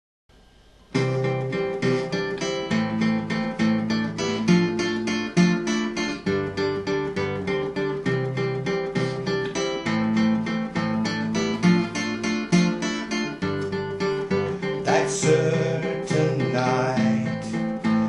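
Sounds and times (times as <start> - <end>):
faint hiss: 0.3 - 2.6
acoustic guitar strumming: 0.4 - 18.0.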